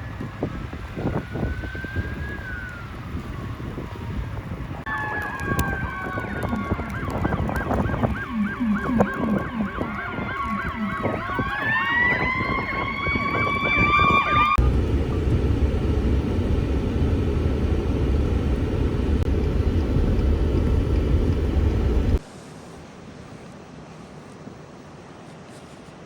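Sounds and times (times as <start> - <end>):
blizzard wind buffeting microphone: 0.0 - 22.2
siren-like wail: 0.0 - 22.2
geese honking: 7.6 - 14.6.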